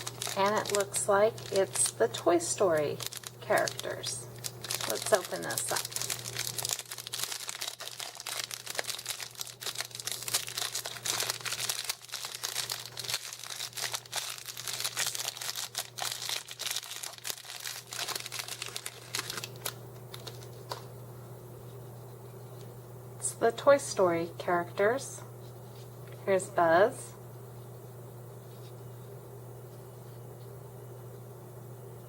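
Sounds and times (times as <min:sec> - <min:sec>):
plastic wrapper crinkling and tearing: 0:00.0 - 0:02.1, 0:02.8 - 0:20.9.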